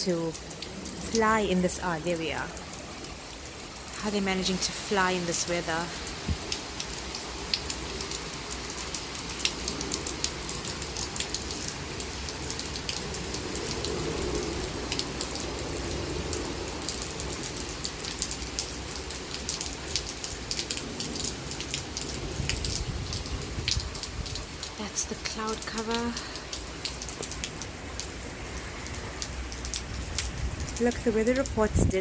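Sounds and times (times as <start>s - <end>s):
heavy rain falling: 0.0s - 32.0s
raindrops tapping close by: 0.0s - 32.0s
gusting wind rumble: 22.1s - 24.6s, 29.8s - 32.0s.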